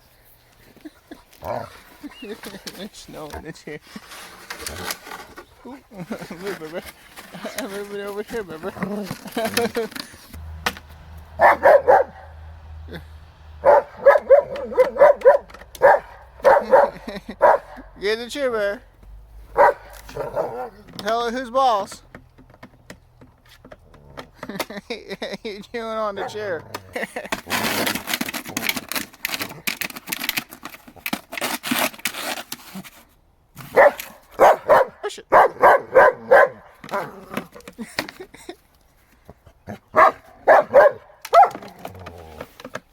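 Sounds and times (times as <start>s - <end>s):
dog barking: 11.4s - 12.4s, 13.6s - 17.8s, 19.5s - 20.8s, 26.2s - 26.4s, 33.7s - 37.1s, 39.9s - 41.6s.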